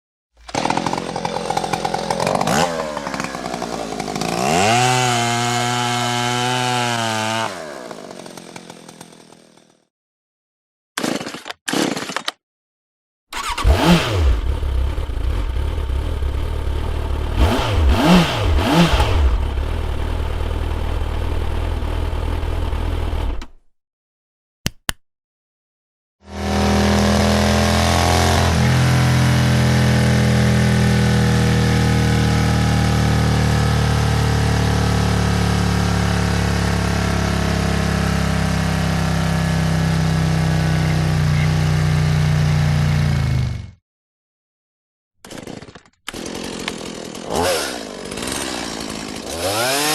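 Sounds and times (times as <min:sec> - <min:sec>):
motorcycle engine revving: 0:00.4 - 0:07.8, 0:13.4 - 0:23.5, 0:26.3 - 0:43.8, 0:47.3 - 0:48.6, 0:49.3 - 0:49.9
engine running steadily: 0:13.6 - 0:23.4.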